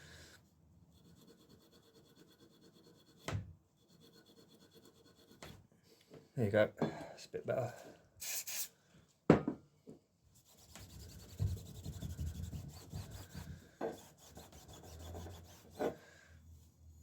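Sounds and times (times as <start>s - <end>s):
cloth rubbing on bicycle part: 10.4s - 15.9s.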